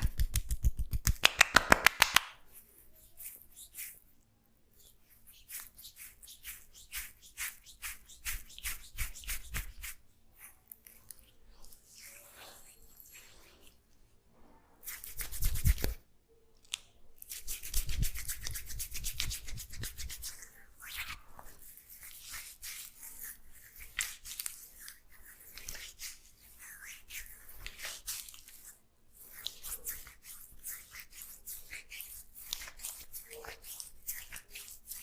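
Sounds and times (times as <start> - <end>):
hands rubbing hair and scalp: 0.0 - 4.0, 4.8 - 13.8, 14.8 - 16.0, 17.2 - 35.0.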